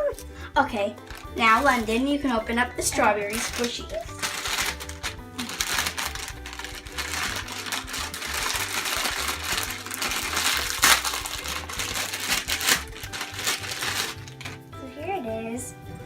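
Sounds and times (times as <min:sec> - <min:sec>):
plastic package crinkling: 0:01.0 - 0:02.3, 0:03.3 - 0:14.7.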